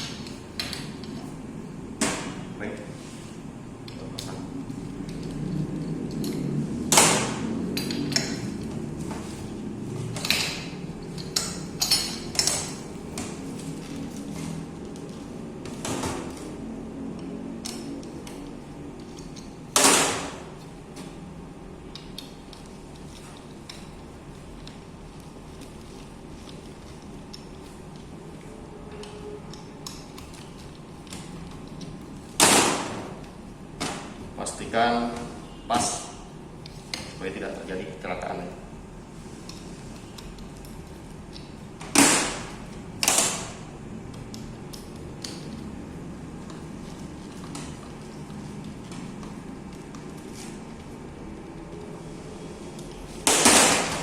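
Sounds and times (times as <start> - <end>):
metal parts clicking and tapping: 7.7 - 8.8, 10.2 - 13.3.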